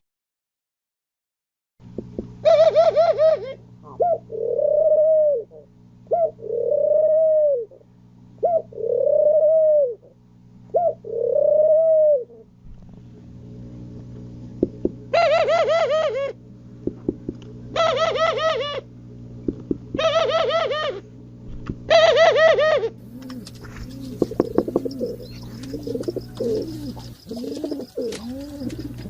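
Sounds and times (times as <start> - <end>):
steady low hum: 1.8 - 29.0
pigeon cooing: 2.4 - 7.8, 8.4 - 12.5, 15.1 - 16.4, 17.8 - 18.9, 20.0 - 21.0, 21.9 - 29.0
rapid warble: 23.0 - 29.0.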